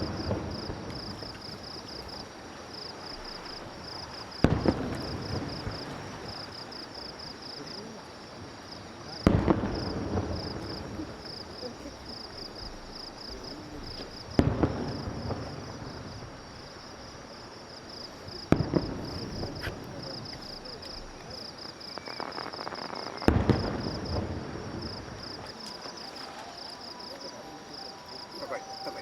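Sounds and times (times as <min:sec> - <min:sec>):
firework shells booming: 0:00.0 - 0:01.8, 0:03.2 - 0:06.5, 0:09.1 - 0:11.4, 0:12.6 - 0:16.7, 0:18.2 - 0:26.1
firework crackling: 0:00.0 - 0:07.9, 0:09.0 - 0:17.0, 0:17.8 - 0:29.0
insects chirping: 0:00.0 - 0:29.0.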